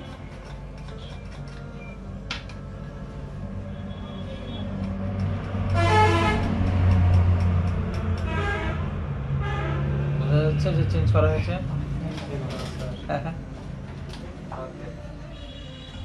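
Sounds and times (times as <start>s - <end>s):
vehicle engine rumble: 3.4s - 14.3s
car horn toots: 5.7s - 6.6s, 8.2s - 10.0s.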